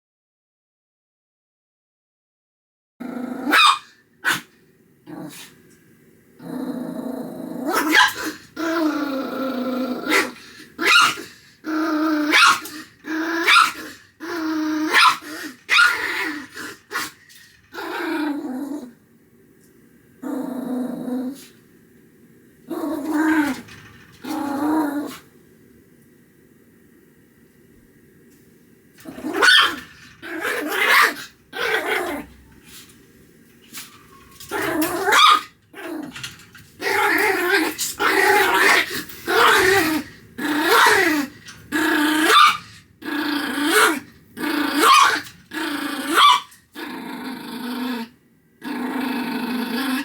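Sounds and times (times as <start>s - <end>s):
small dog growling and barking: 3.0s - 5.6s, 6.4s - 19.0s, 20.2s - 21.6s, 22.6s - 25.3s, 29.0s - 32.9s, 33.7s - 50.0s.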